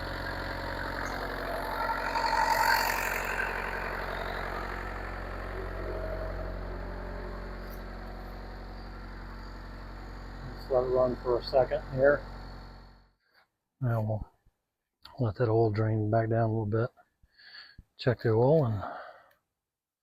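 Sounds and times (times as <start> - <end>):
diesel engine idling: 0.0 - 13.1.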